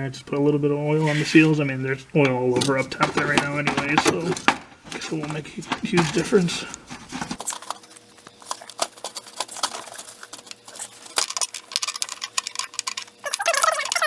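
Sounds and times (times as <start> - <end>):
oil filter clicking and scraping: 7.4 - 14.0.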